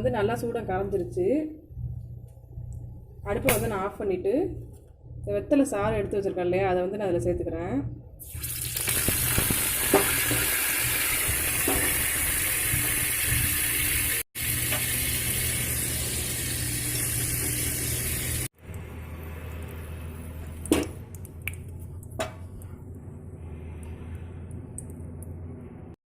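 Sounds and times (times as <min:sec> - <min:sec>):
hot oil sizzling: 0:08.2 - 0:18.5.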